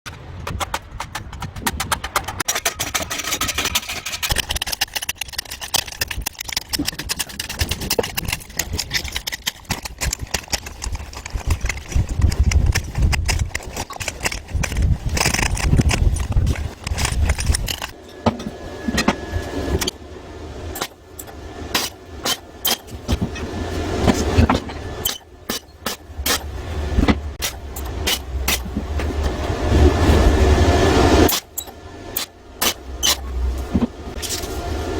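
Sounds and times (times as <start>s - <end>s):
rapid knocking and rattling: 0.1s - 19.2s
low rumble: 10.8s - 34.9s.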